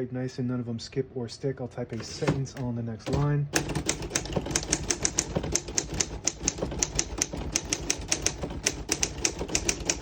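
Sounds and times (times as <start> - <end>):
typewriter keys clacking: 3.1 - 10.0.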